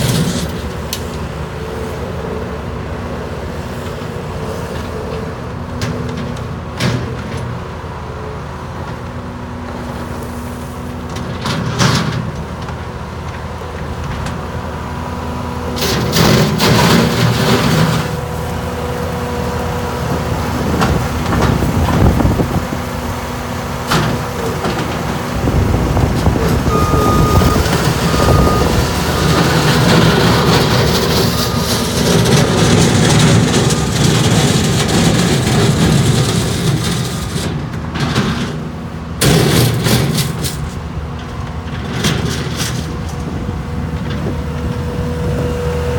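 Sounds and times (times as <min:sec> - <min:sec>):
diesel engine running: 0:00.0 - 0:45.9
short high beeps: 0:26.7 - 0:29.5.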